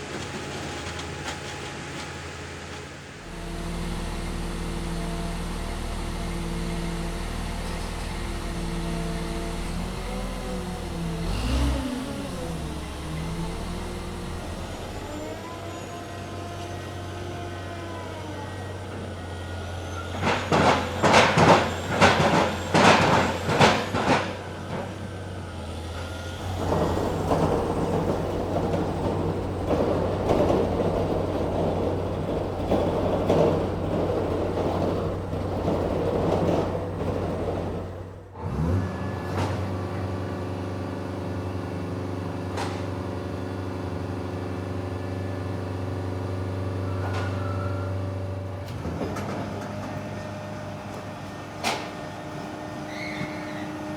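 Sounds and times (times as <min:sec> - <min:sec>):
crane engine: 0:00.0 - 0:53.9
drilling rig running: 0:03.2 - 0:38.4
pile driver pounding: 0:03.3 - 0:15.5, 0:20.1 - 0:25.1, 0:26.4 - 0:38.3.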